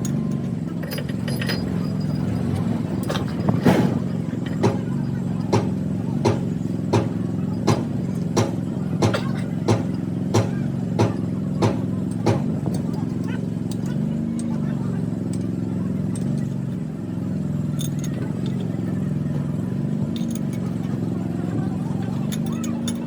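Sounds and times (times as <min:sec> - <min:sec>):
low mechanical hum: 0:00.0 - 0:23.0.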